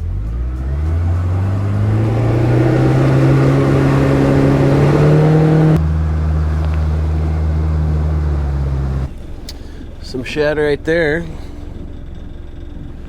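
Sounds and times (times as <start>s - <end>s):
outboard motor accelerating: 0.0s - 13.0s.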